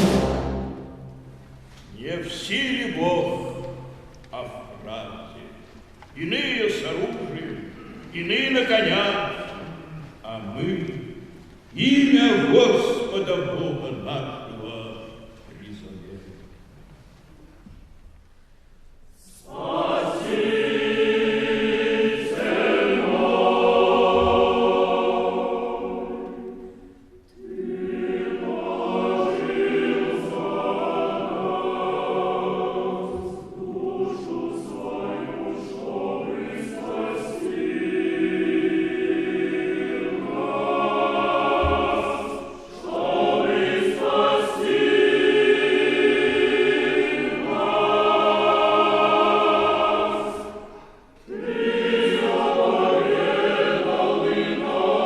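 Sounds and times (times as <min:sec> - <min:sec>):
mixed choir singing: 0:00.0 - 0:01.4, 0:19.2 - 0:55.0.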